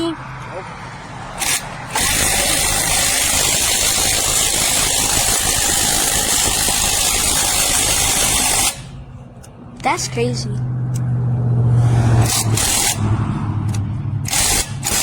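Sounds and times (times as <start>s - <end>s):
impact wrench hammering: 1.4s - 8.9s, 12.2s - 13.1s, 13.7s - 15.0s.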